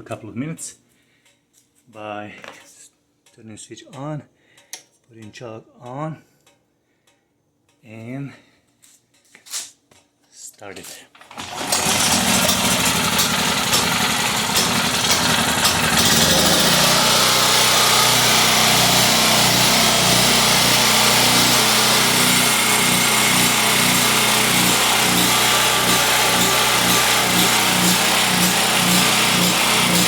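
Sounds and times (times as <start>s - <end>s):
generator engine running: 11.3s - 30.0s.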